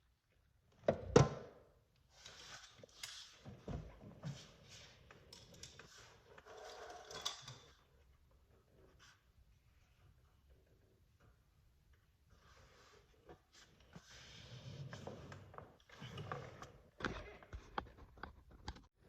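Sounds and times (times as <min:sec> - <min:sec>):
rustling and scraping handling noise: 0:02.1 - 0:07.9.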